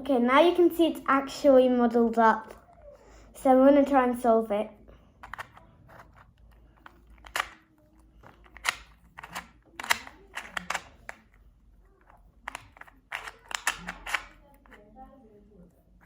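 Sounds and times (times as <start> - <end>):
puzzle cube plastic clicks: 5.1 - 14.8.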